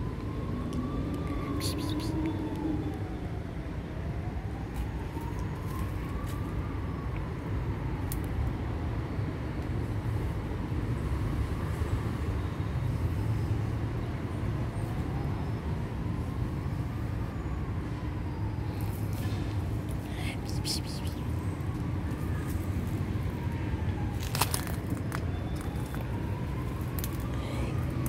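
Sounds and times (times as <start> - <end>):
emergency vehicle siren wailing: 0.0 - 9.9, 11.0 - 28.0
low rumble of road traffic: 0.0 - 28.0.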